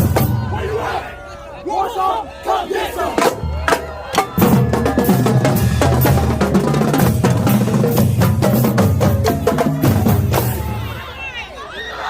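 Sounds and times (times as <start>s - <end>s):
pounding bass drums: 3.2s - 11.0s.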